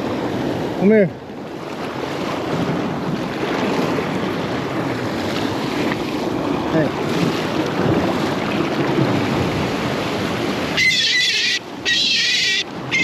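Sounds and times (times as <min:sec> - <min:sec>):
water: 0:00.0 - 0:13.0
wind: 0:00.0 - 0:13.0
gull distress calls: 0:10.7 - 0:13.0.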